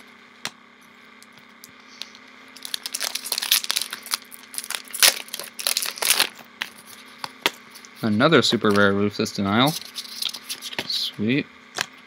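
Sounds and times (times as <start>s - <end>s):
foil wrapper crinkling and tearing: 2.6s - 6.4s.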